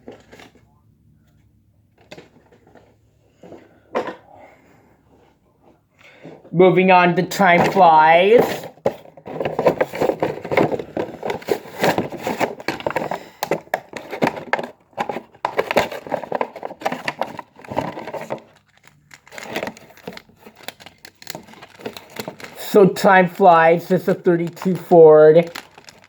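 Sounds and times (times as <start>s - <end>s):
packaging crinkling and clicking: 7.4s - 26.0s.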